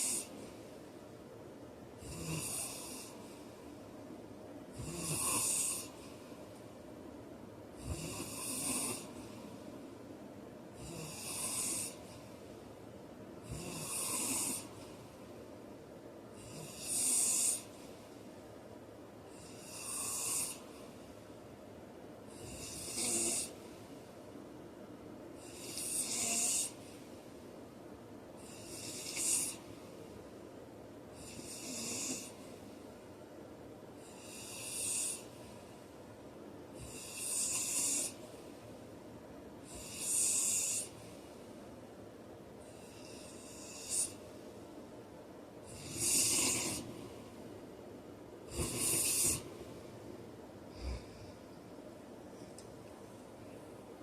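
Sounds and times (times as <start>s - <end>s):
man snoring: 0.0s - 0.3s, 2.0s - 3.2s, 4.7s - 6.0s, 7.8s - 9.2s, 10.8s - 12.1s, 13.4s - 14.8s, 16.4s - 17.8s, 19.4s - 20.7s, 22.3s - 23.6s, 25.4s - 26.8s, 28.4s - 29.6s, 31.2s - 32.4s, 34.0s - 35.4s, 36.8s - 38.2s, 39.7s - 41.0s, 42.7s - 44.2s, 45.7s - 47.1s, 48.5s - 49.6s, 50.7s - 51.2s.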